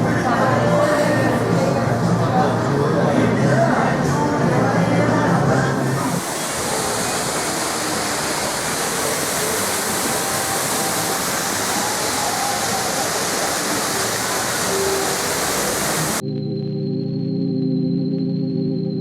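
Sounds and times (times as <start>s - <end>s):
fountain water spray rushing: 5.5s - 16.2s.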